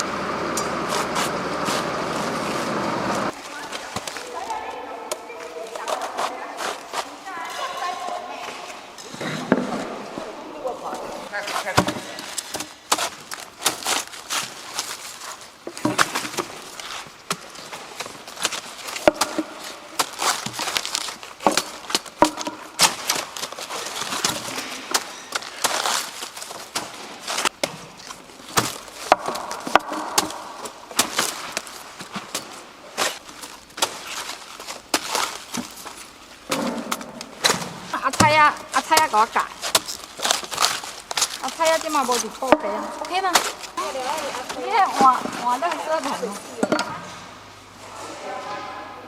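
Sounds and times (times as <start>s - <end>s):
cabbage crackling and rustling: 0.4s - 9.2s, 10.2s - 46.6s.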